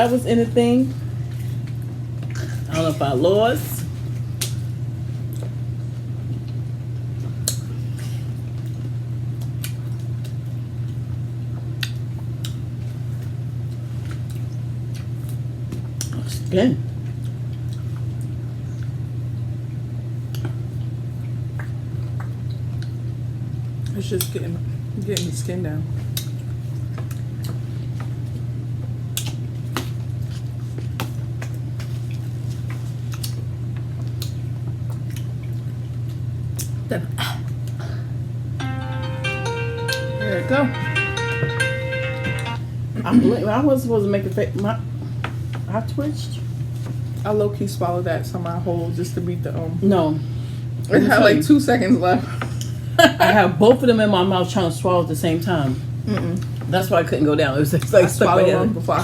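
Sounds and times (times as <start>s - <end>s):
wet chewing clicks and smacks: 6.4s - 7.7s, 8.5s - 11.0s, 11.8s - 12.6s, 13.7s - 19.0s, 29.1s - 30.4s, 33.1s - 36.8s
person chewing: 11.8s - 16.2s, 31.5s - 33.4s, 34.0s - 36.8s.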